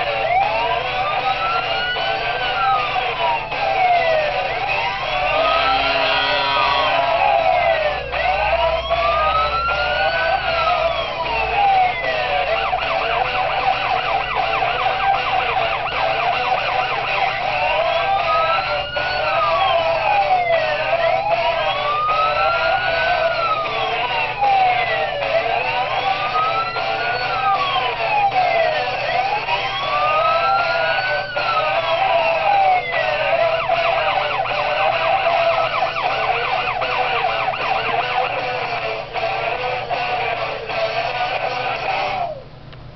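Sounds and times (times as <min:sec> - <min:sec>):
wailing siren: 0:00.0 - 0:42.4
goal horn drone: 0:05.2 - 0:07.2.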